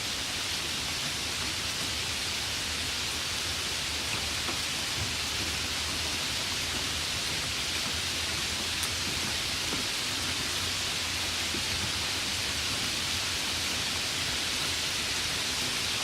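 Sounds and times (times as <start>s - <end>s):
light rain falling: 0.0s - 16.0s.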